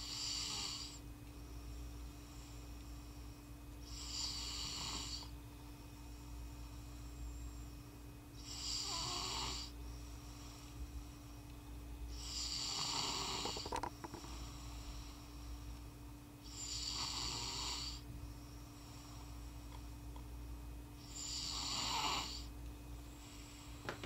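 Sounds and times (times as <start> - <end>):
person snoring: 0.0 - 1.0, 3.8 - 5.3, 8.4 - 9.8, 12.1 - 15.2, 16.4 - 18.0, 21.0 - 22.5
faint steady hum: 0.0 - 24.0.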